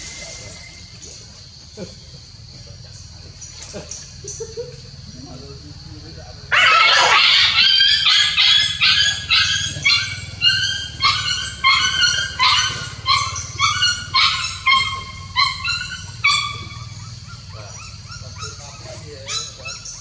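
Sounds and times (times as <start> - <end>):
puppies yelping and whimpering: 6.5 - 20.0.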